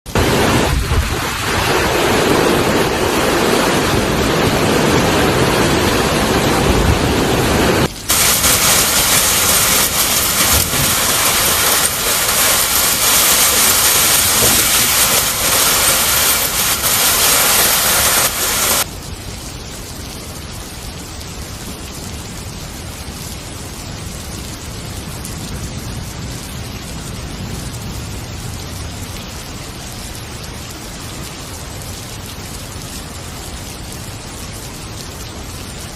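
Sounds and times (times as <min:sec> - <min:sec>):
wind: 0:00.0 - 0:35.9
heavy rain: 0:00.1 - 0:35.9.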